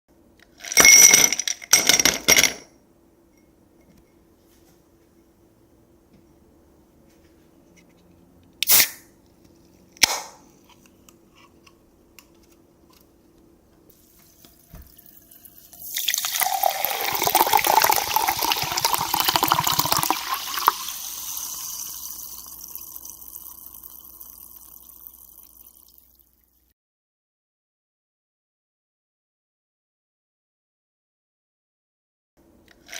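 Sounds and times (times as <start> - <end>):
soda can hissing pop: 8.6 - 9.1
carbonation fizzing: 13.9 - 26.7
soda pouring over ice: 14.0 - 26.6.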